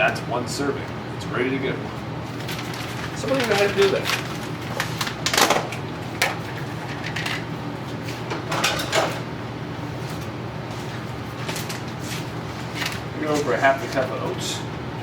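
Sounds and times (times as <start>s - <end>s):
steady low hum: 0.0s - 15.0s
containers and utensils clattering: 2.5s - 7.4s, 8.3s - 9.2s.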